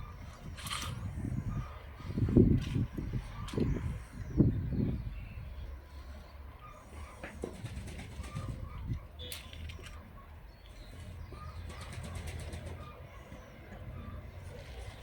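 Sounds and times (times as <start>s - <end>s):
wind buffeting microphone: 0.0s - 6.0s, 7.4s - 9.2s
small clicks and crackles: 9.2s - 10.0s.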